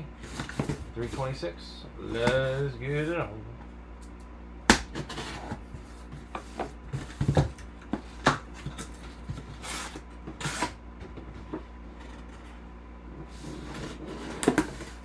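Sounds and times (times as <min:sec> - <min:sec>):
packaging knocks and thumps: 0:04.8 - 0:09.6.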